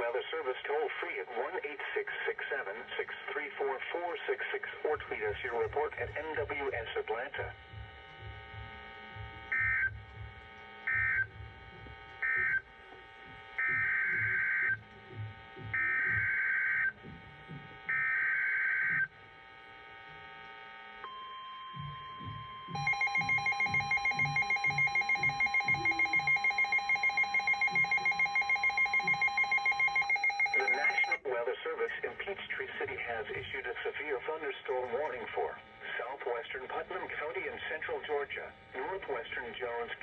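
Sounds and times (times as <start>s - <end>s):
steady weather radio alert tone: 0.0s - 19.2s, 19.8s - 40.0s
pulsing two-tone attention signal: 7.5s - 12.7s, 21.0s - 31.2s
digital data bursts: 21.8s - 31.2s.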